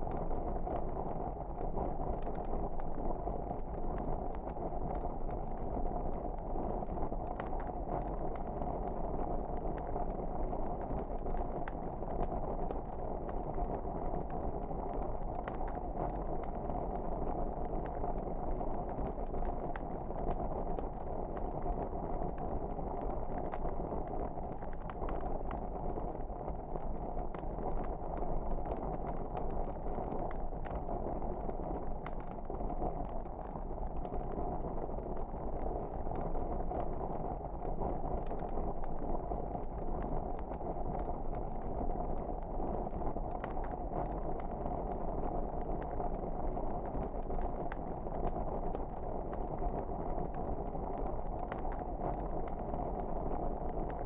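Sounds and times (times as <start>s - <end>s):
fire crackling and popping: 0.0s - 54.0s.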